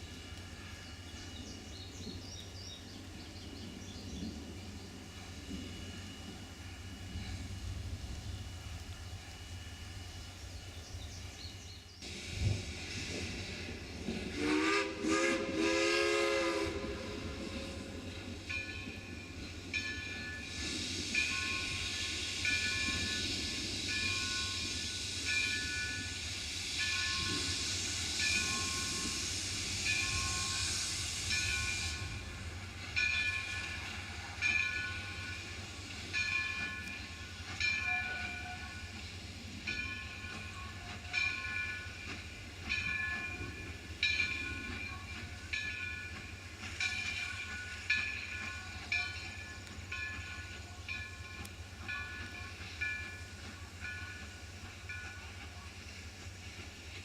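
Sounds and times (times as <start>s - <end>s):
loud hiss of steam: 0.0s - 57.0s
steam locomotive bell ringing: 14.3s - 57.0s.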